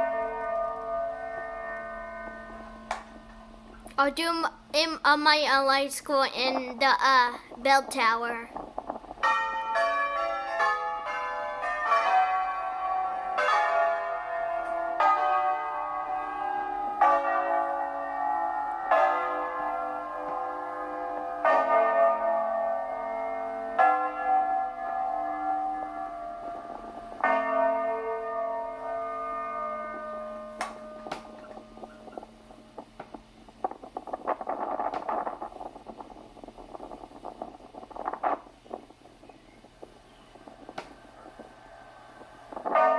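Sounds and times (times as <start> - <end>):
tower bell hum: 0.0 - 4.0, 9.2 - 32.8.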